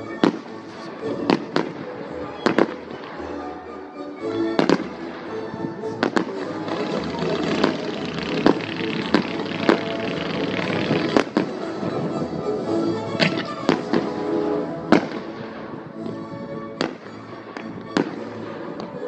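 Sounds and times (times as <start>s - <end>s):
music playing: 0.0s - 19.0s
firework shells bursting: 6.0s - 11.7s
firework crackling: 6.0s - 11.9s.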